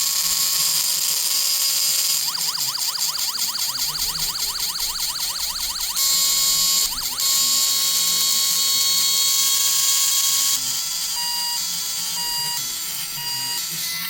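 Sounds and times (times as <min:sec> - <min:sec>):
siren effects from small speaker: 0:01.8 - 0:08.5.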